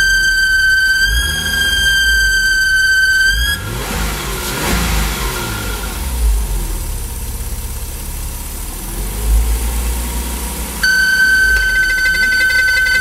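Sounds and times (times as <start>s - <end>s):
high-pitched whistle: 0.0s - 3.8s, 10.8s - 13.0s
car engine idling and revving: 0.0s - 13.0s.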